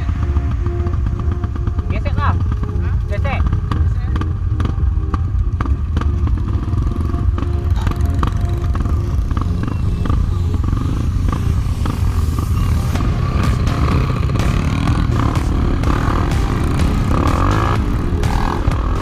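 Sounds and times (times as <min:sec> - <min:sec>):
motorcycle engine rumble: 0:00.0 - 0:19.0.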